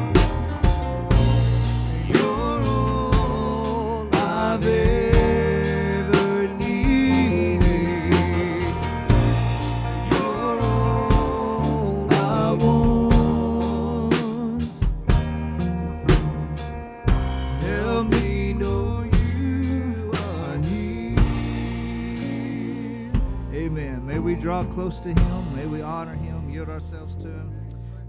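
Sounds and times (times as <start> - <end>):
worship band playing: 0.0 - 27.2.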